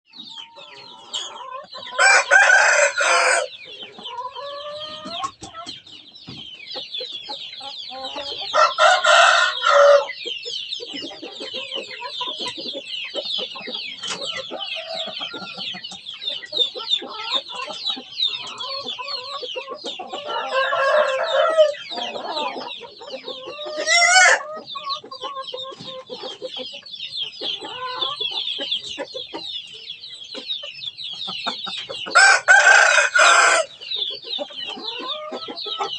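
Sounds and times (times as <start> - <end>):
chicken clucking: 0.1 - 35.9
rooster crowing: 2.0 - 3.5, 8.5 - 10.2, 20.2 - 22.5, 32.2 - 33.7.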